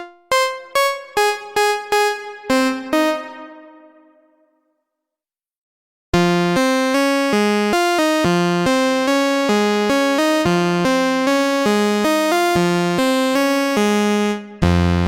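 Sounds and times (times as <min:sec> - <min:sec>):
synthesizer stepping bright notes: 0:00.0 - 0:04.4.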